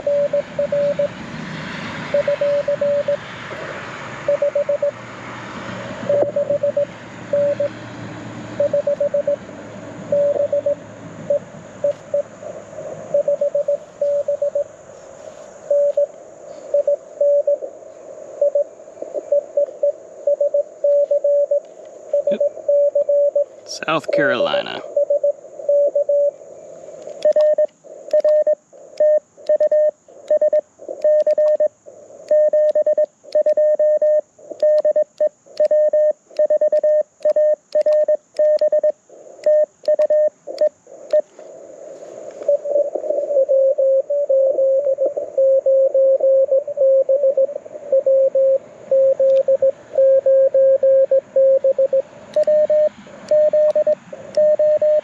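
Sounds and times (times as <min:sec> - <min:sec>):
lower-pitched morse code signal: 0:00.0 - 0:01.1, 0:02.1 - 0:03.2, 0:04.2 - 0:05.0, 0:06.1 - 0:07.7, 0:08.6 - 0:09.4, 0:10.1 - 0:12.3, 0:13.1 - 0:14.7, 0:15.7 - 0:17.7, 0:18.4 - 0:18.6, 0:19.3 - 0:26.3, 0:27.2 - 0:31.7, 0:32.3 - 0:41.2, 0:42.4 - 0:55.0
morse code tone: 0:00.0 - 0:01.1, 0:02.1 - 0:03.2, 0:04.3 - 0:04.9, 0:06.1 - 0:07.7, 0:08.6 - 0:09.4, 0:10.1 - 0:12.2, 0:13.1 - 0:14.7, 0:15.7 - 0:16.1, 0:20.3 - 0:26.3, 0:32.3 - 0:41.2, 0:42.5 - 0:55.0
radio background hiss: 0:23.6 - 0:24.9.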